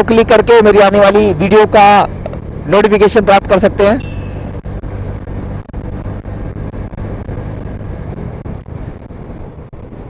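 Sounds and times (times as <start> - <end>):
wind noise on microphone: 2.0 - 10.0.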